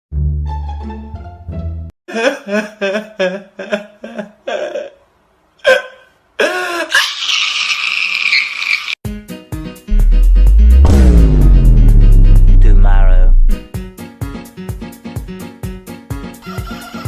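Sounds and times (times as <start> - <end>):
person's voice in short bursts: 12.5 - 13.5.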